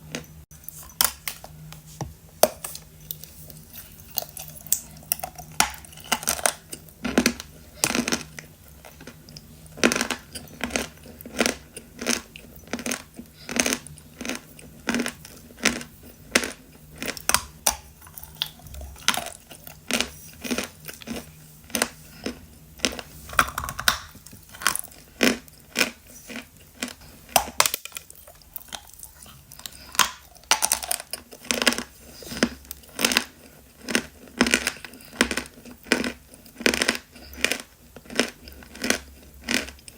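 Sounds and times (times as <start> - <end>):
chalk being chewed: 2.6 - 23.2.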